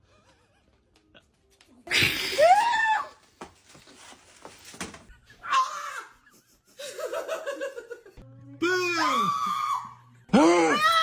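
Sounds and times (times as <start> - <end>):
person crying out: 8.6 - 11.0
person screaming: 8.6 - 11.0.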